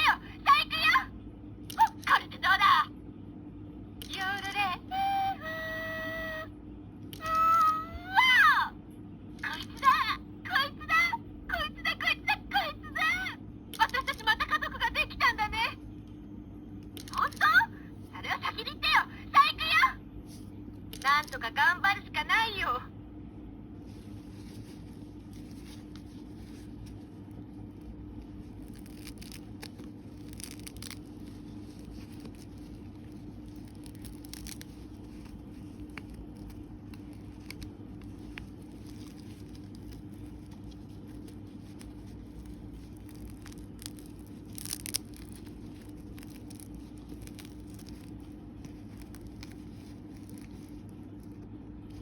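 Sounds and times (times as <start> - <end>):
steady low hum: 0.0 - 52.0
toy figure clicks and rustles: 13.7 - 14.3, 17.0 - 17.5.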